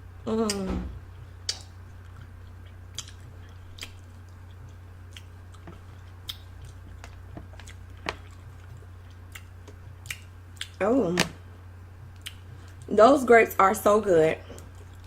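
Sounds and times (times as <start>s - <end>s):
steady low hum: 0.0s - 15.0s
person chewing grapes: 0.2s - 10.8s, 12.0s - 12.9s, 14.5s - 15.0s.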